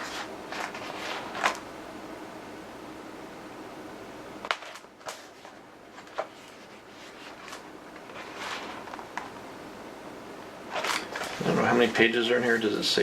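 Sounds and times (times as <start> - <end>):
book pages turning: 0.0 - 1.6, 4.5 - 9.3
faint room noise: 0.0 - 13.0.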